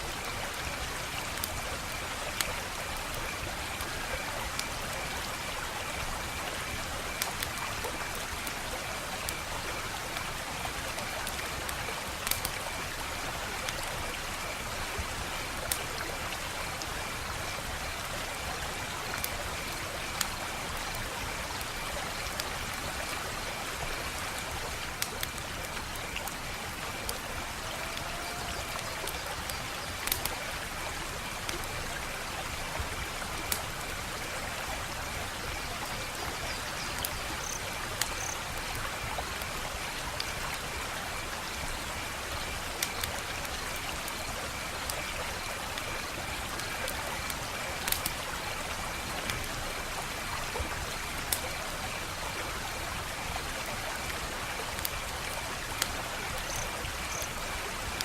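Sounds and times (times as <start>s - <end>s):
wood fire crackling: 0.4s - 17.1s, 18.2s - 31.7s, 45.7s - 49.5s.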